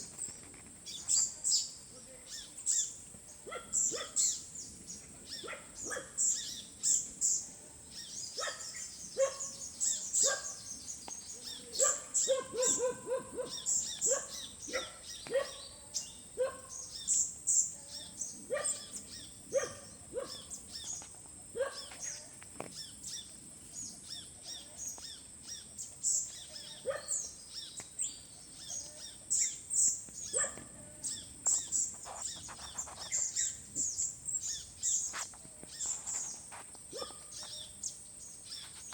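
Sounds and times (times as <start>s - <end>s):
birds chirping and calling: 0.0s - 38.9s.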